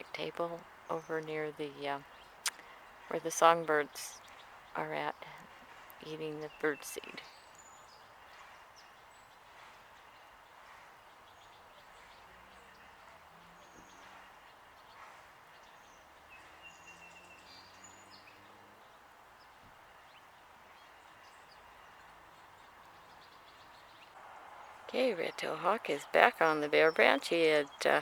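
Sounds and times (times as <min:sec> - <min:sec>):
outdoor background hiss: 0:00.0 - 0:28.0
songbird chirps and calls: 0:00.0 - 0:28.0.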